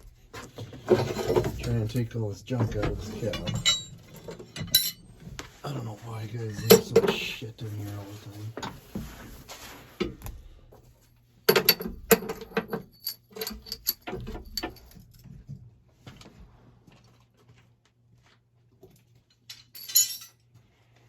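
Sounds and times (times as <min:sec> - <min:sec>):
hard objects clattering: 0:00.0 - 0:05.4.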